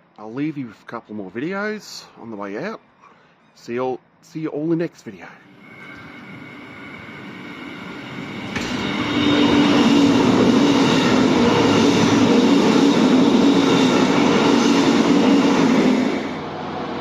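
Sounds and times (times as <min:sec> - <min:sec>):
train passing: 0:05.2 - 0:17.0.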